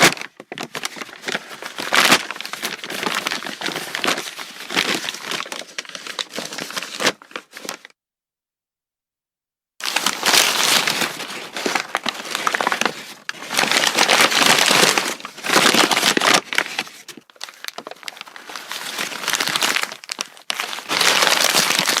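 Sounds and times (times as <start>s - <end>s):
paper bag crumpling: 0.0s - 7.9s, 9.8s - 22.0s.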